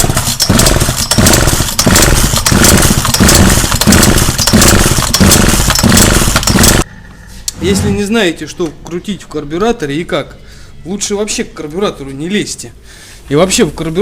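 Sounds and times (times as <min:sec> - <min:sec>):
chainsaw engine surging unevenly: 0:00.0 - 0:06.9.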